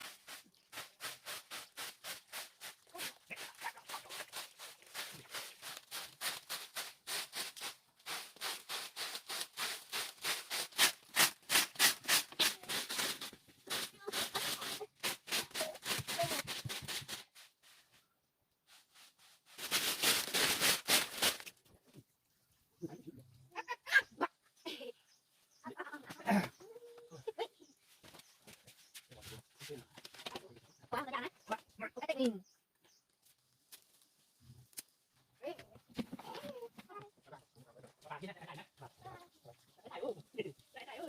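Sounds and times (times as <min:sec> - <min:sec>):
quick scraping strokes: 0:00.0 - 0:17.8, 0:18.7 - 0:21.5.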